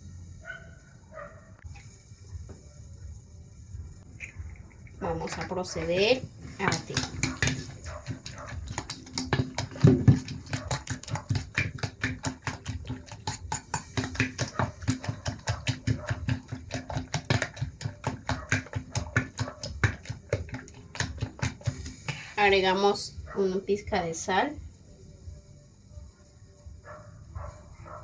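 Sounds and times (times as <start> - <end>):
whisk tapping against bowl: 6.2 - 22.4.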